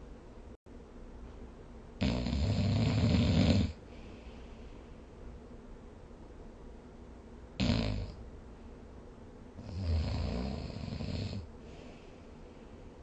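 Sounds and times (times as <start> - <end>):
person snoring: 2.0 - 3.8, 7.6 - 8.2, 9.6 - 11.5.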